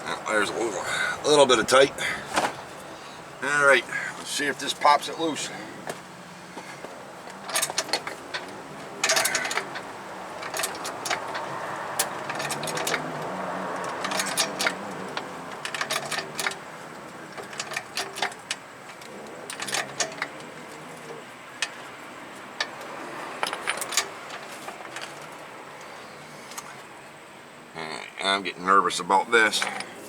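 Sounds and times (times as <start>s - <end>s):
floor jack pumping clicks and rattles: 6.6s - 25.4s.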